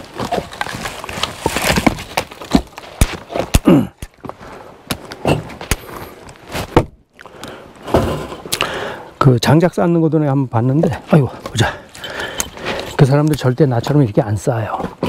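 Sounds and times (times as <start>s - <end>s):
rustling and scraping: 0.0s - 3.5s, 4.1s - 6.8s, 12.0s - 14.0s
firewood logs clunking: 0.0s - 7.0s.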